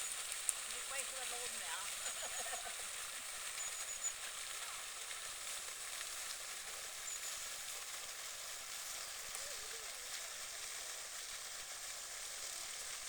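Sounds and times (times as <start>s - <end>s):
outdoor background hiss: 0.0s - 13.0s
small bird chirping: 3.5s - 4.3s, 7.0s - 7.6s.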